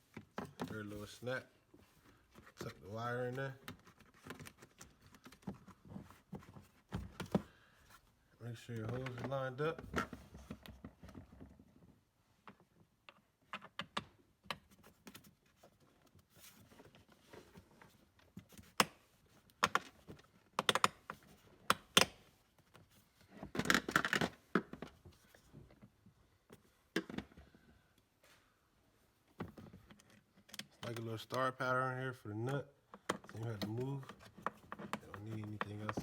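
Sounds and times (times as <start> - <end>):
plastic parts clicking and scraping: 2.2 - 7.5, 13.0 - 25.8, 29.3 - 31.5, 32.4 - 36.0.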